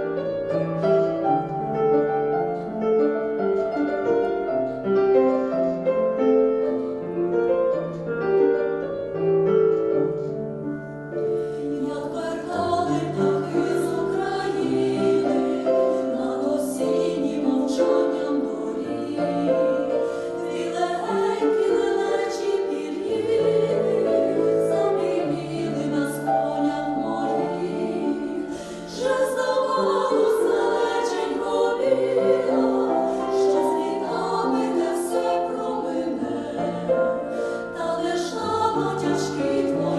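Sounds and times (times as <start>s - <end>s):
piano playing: 0.0s - 39.9s
vocal ensemble singing in parts: 11.0s - 39.9s.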